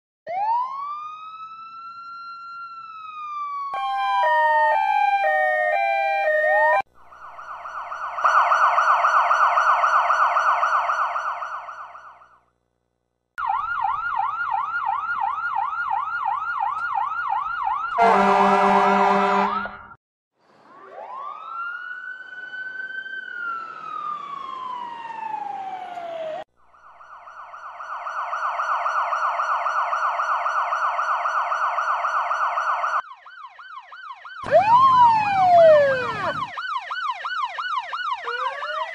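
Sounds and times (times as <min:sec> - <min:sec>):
emergency vehicle sirens: 0:00.3 - 0:12.3, 0:13.4 - 0:38.9
deep horn blast: 0:18.0 - 0:19.8.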